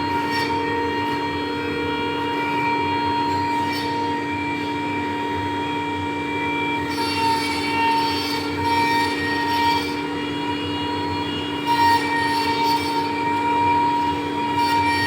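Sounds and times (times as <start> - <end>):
milling machine spindle whine: 0.0 - 15.0
tool scraping while cutting: 6.8 - 10.3, 11.6 - 15.0.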